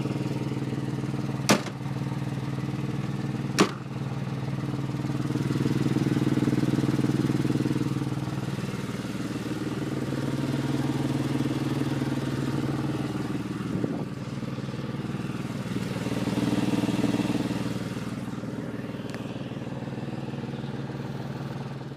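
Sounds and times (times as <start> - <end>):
car engine running: 0.0 - 21.9
brief engine knock: 1.5 - 1.8, 3.6 - 3.8.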